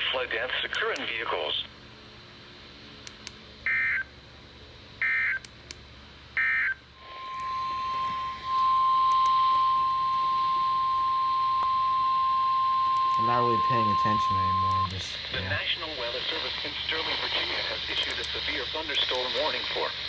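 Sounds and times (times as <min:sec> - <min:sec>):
steady warning alarm tone: 0:06.4 - 0:15.4
digital data tone bursts: 0:07.0 - 0:15.2.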